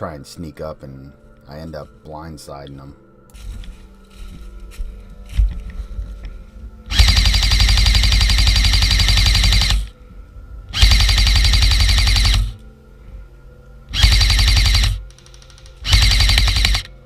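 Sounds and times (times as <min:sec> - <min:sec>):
airsoft rifle firing full auto: 0:06.9 - 0:09.9, 0:10.8 - 0:12.6, 0:14.0 - 0:16.9.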